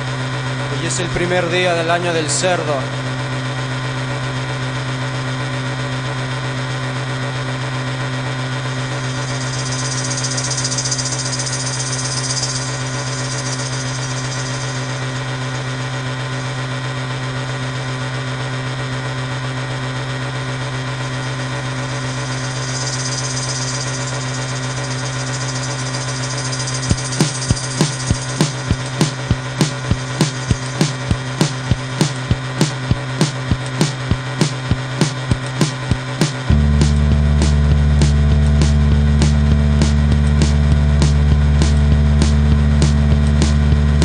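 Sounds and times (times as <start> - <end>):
low droning machine hum: 0.0 - 44.0.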